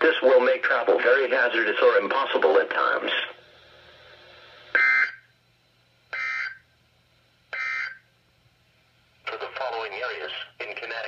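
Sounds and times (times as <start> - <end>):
raspy digital data bursts: 6.2 - 6.6.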